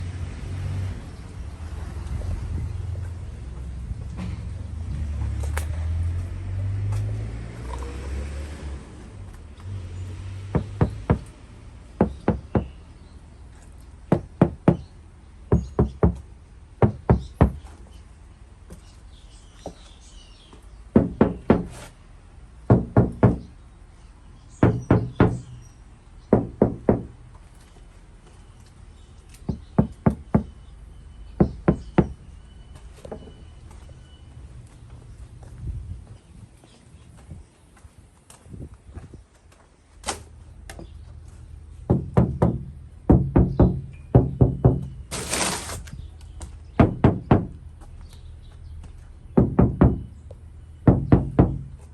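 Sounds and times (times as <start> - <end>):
knocking raps: 10.5 - 11.3, 20.9 - 21.8, 22.7 - 23.6, 24.6 - 25.6, 26.3 - 27.2, 29.4 - 30.6, 31.3 - 32.2, 41.8 - 45.2, 46.7 - 47.6, 49.4 - 50.2, 50.8 - 51.9.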